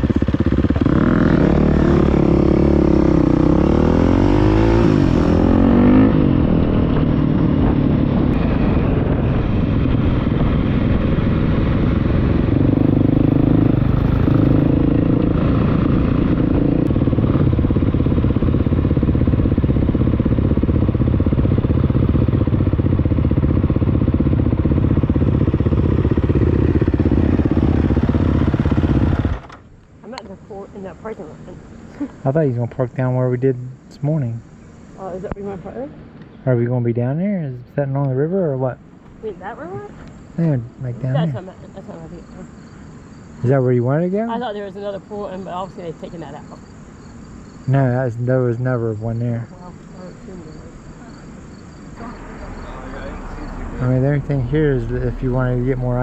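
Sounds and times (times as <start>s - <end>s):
motorcycle engine revving: 0.0s - 56.0s.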